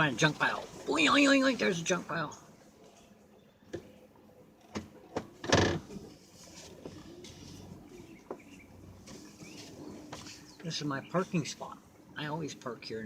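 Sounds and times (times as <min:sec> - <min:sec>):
faint engine hum: 0:05.8 - 0:13.0.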